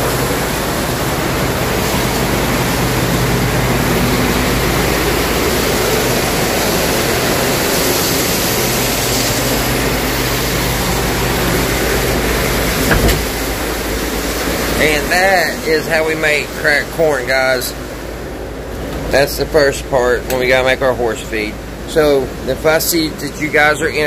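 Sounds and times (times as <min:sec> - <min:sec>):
low machine hum: 0:00.0 - 0:24.0
sharp knock: 0:12.9 - 0:13.4.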